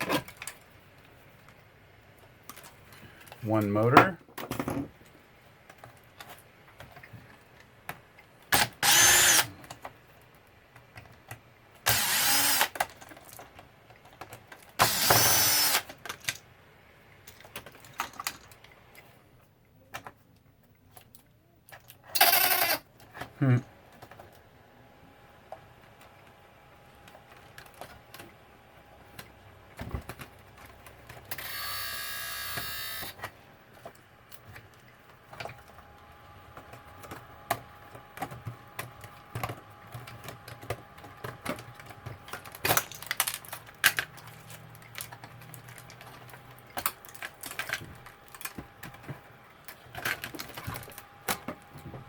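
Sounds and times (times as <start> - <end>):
plastic and metal parts clicking: 36.5 - 51.8.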